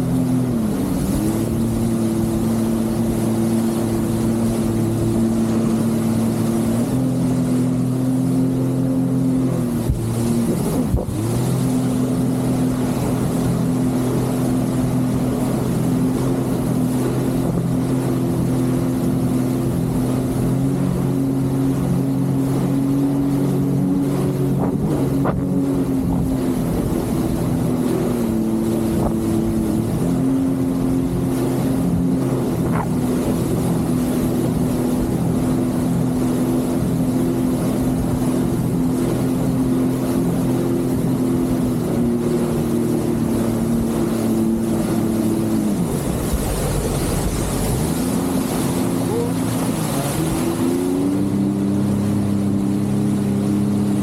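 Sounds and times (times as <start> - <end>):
jet ski engine running: 0.0 - 54.0.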